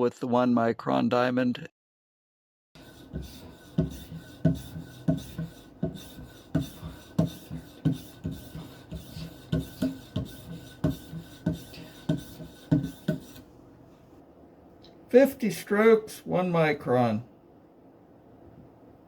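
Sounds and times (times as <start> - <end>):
knife rasping on strop: 2.8 - 13.5.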